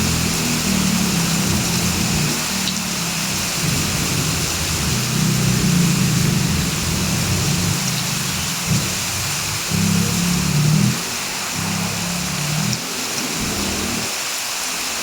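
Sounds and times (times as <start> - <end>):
heavy rain hiss: 0.0 - 15.0
low rumble: 3.4 - 12.8.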